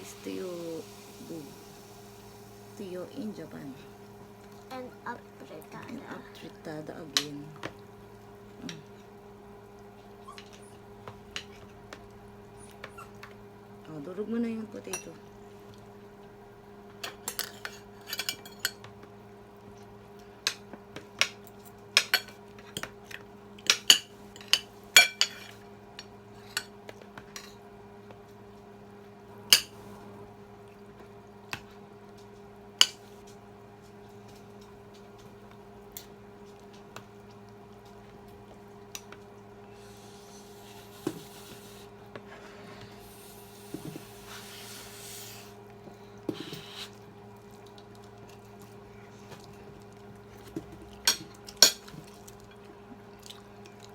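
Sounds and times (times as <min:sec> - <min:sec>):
soft rustling hiss: 0:00.0 - 0:10.2
steady low hum: 0:00.0 - 0:53.9
cutlery clinking on a plate: 0:17.1 - 0:18.9, 0:23.7 - 0:25.6, 0:29.5 - 0:29.8, 0:51.1 - 0:52.0.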